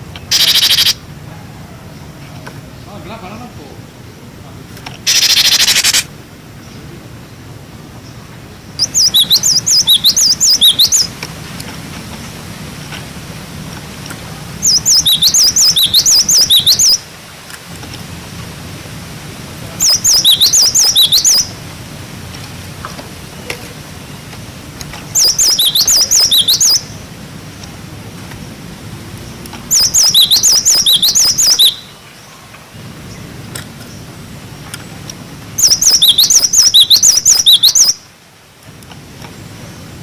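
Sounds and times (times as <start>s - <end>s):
bird singing high notes: 0.3s - 1.0s, 5.1s - 6.1s, 8.8s - 11.1s, 14.6s - 17.0s, 19.8s - 21.5s, 25.2s - 27.0s, 29.7s - 32.0s, 35.6s - 38.0s.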